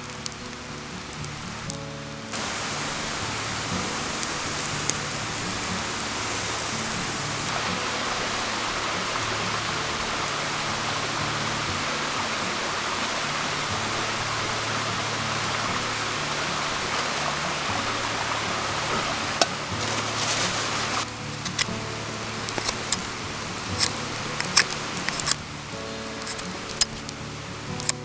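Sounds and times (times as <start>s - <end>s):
soft background music: 0.0s - 28.0s
steady hiss of water: 0.0s - 28.0s
brief crackling: 18.8s - 25.4s.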